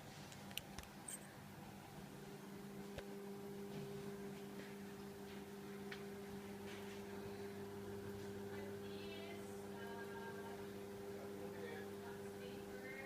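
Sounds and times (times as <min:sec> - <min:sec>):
ceiling fan motor hum: 0:00.0 - 0:13.0.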